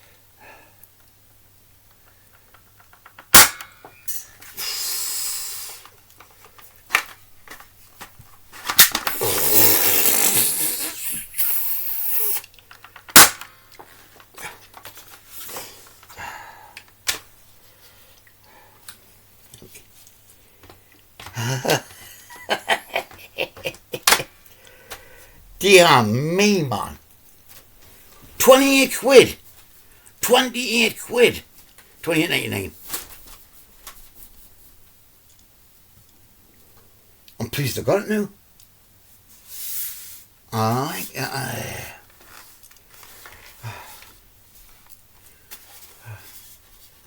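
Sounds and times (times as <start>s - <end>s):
air rifle shots: 3.3s - 3.7s, 13.1s - 13.4s
rustling noise: 13.8s - 16.2s, 32.7s - 34.9s, 42.0s - 47.0s.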